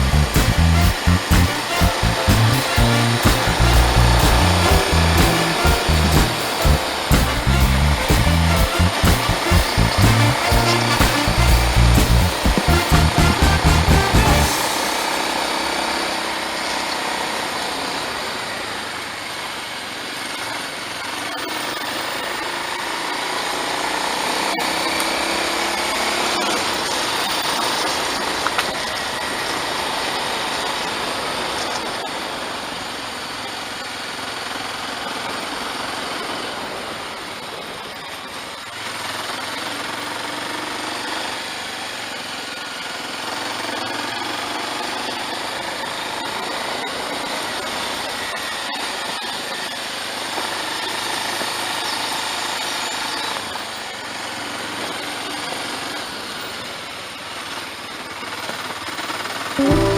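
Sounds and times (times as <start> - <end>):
motorcycle engine running: 0.0 - 2.5.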